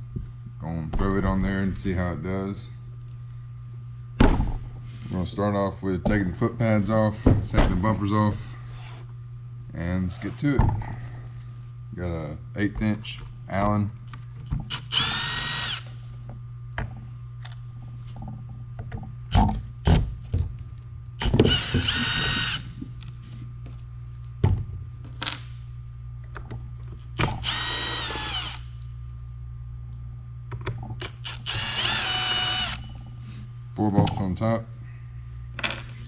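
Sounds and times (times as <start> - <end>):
power drill motor whining: 14.7 - 15.9, 21.2 - 22.7, 27.4 - 28.7, 31.2 - 32.9.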